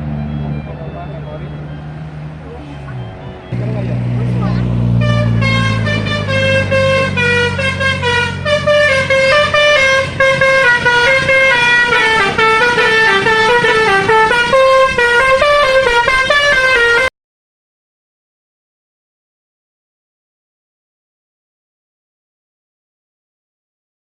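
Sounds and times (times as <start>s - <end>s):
low engine rumble: 0.0s - 17.1s
musical air horn playing a tune: 2.9s - 17.1s.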